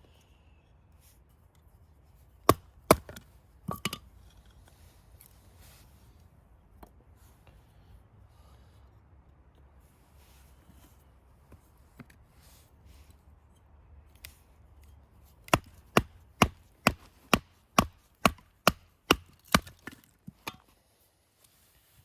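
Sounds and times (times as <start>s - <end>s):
blade chopping on wood: 2.4s - 3.3s, 15.4s - 20.6s.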